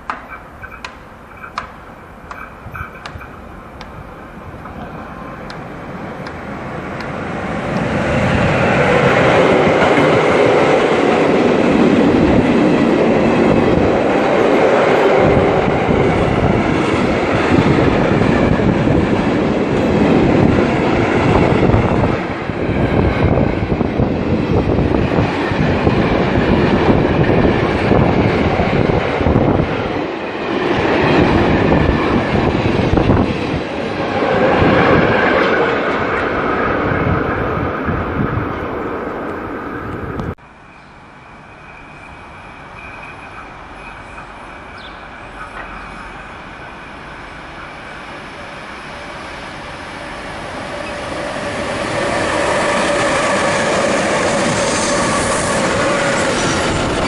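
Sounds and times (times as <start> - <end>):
train wheels clacking on rails: 0.0 - 37.2, 41.7 - 46.7.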